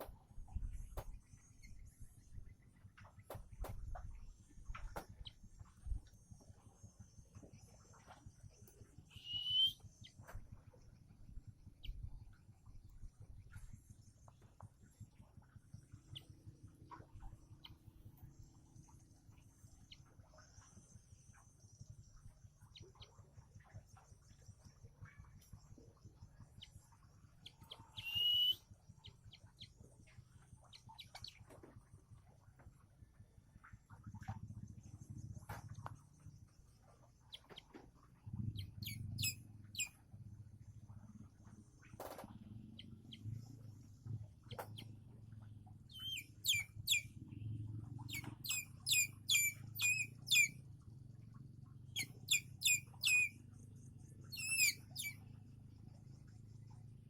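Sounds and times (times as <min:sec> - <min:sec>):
faint chirps and ticks: 0:00.0 - 0:57.0
eagle chick crying: 0:28.0 - 0:28.6, 0:46.0 - 0:47.0, 0:48.1 - 0:50.5, 0:52.0 - 0:53.3, 0:54.3 - 0:55.1.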